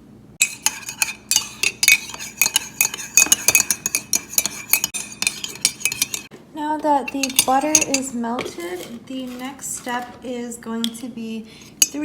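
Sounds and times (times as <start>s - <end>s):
spoon clinking in a mug: 0.4s - 6.3s, 7.1s - 9.9s, 11.6s - 12.0s.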